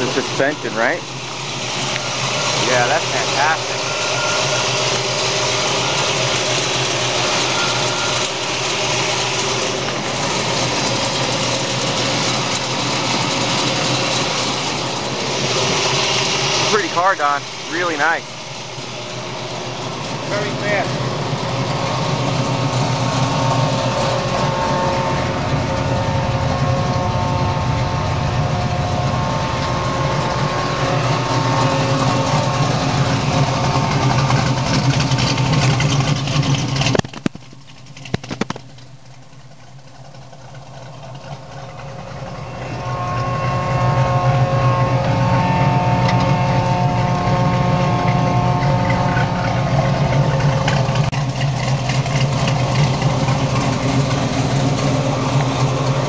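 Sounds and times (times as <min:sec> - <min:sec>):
engine running steadily: 0:00.0 - 0:56.0
sharp clicks: 0:36.8 - 0:38.9.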